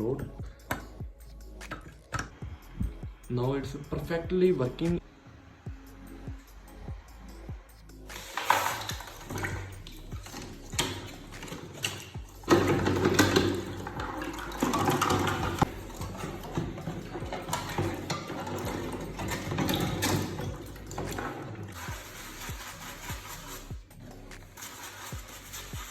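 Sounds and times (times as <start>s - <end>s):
running water splashing: 8.1s - 23.8s, 24.5s - 25.9s
handling clicks and knocks: 10.2s - 21.8s.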